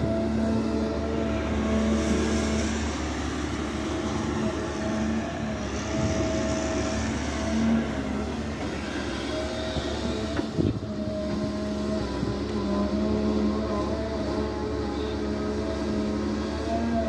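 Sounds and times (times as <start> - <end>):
excavator diesel engine: 0.0 - 17.0
hydraulic whine: 0.0 - 17.0.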